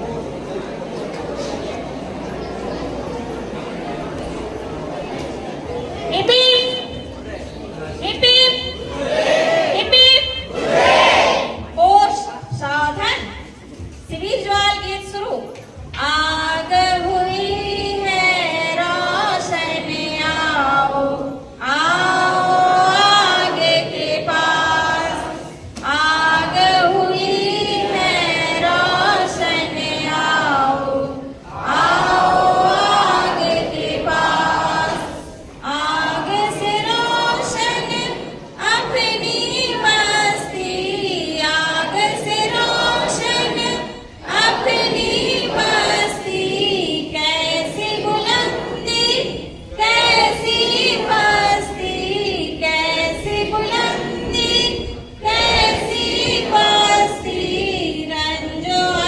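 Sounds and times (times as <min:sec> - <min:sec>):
children singing together: 0:10.4 - 0:11.7, 0:16.4 - 0:59.0.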